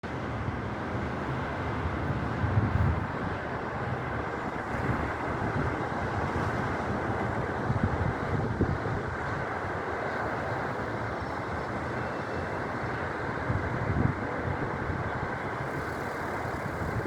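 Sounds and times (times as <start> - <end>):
strong wind on microphone: 1.8 - 9.6, 13.4 - 17.0.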